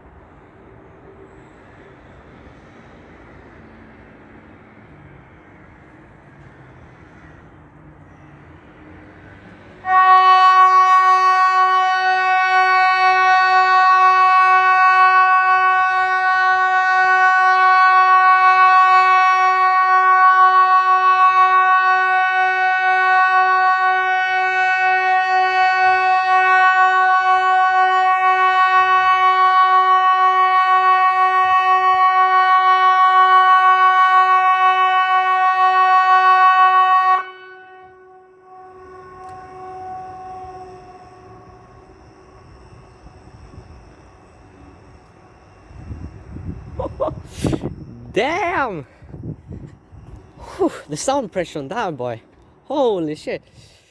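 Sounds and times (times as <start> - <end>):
electronic siren steady tone: 8.3 - 50.6.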